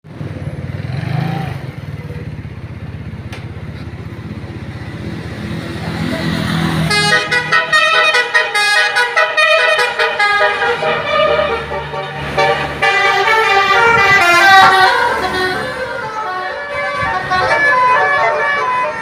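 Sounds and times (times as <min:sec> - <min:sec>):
bus engine running: 0:00.0 - 0:19.0
multi-tone bus horn tune: 0:06.6 - 0:19.0.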